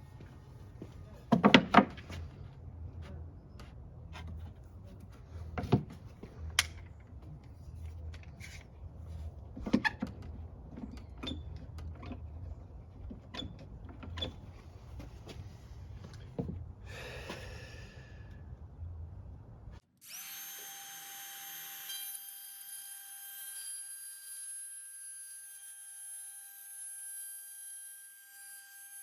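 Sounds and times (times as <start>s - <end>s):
plywood and tools knocking: 1.3s - 2.2s
steady low hum: 14.4s - 19.8s.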